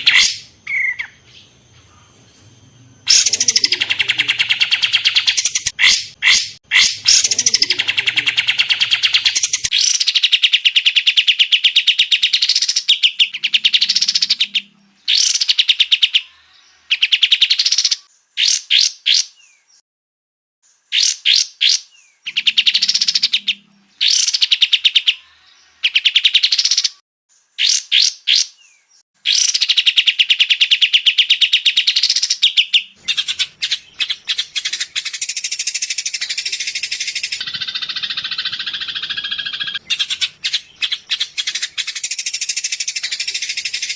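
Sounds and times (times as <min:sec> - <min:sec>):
bird chattering: 0:00.0 - 0:02.2, 0:03.1 - 0:19.3, 0:29.3 - 0:43.9
songbird trilling: 0:00.0 - 0:02.2, 0:03.0 - 0:19.6, 0:29.3 - 0:43.9.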